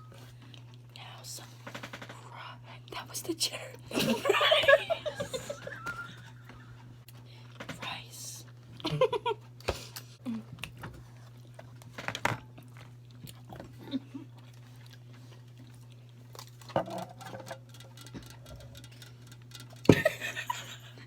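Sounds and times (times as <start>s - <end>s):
people chewing: 0.0s - 1.0s, 4.0s - 7.6s, 8.5s - 16.7s
steady low hum: 0.0s - 21.0s
small clicks and knocks: 17.2s - 19.9s.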